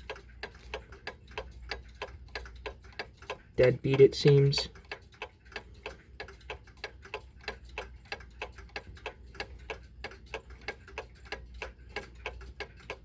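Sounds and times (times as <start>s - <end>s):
clock ticking: 0.0s - 13.0s.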